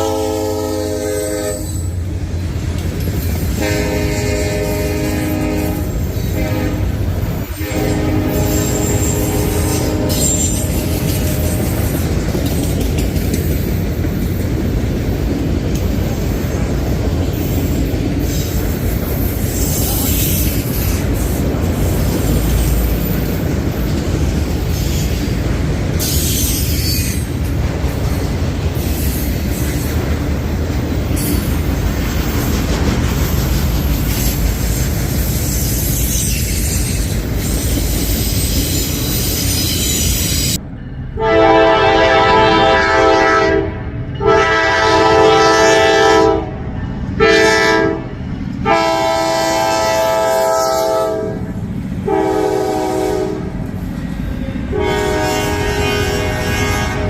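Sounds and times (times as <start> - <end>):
locomotive air horn chord: 0.0 - 2.0, 3.6 - 7.0, 7.6 - 11.9, 41.2 - 53.6, 54.7 - 57.0
train wheels rumbling on rail: 0.0 - 57.0
high wheel squeal: 1.5 - 2.0, 8.3 - 12.7, 26.0 - 27.4, 34.1 - 40.6.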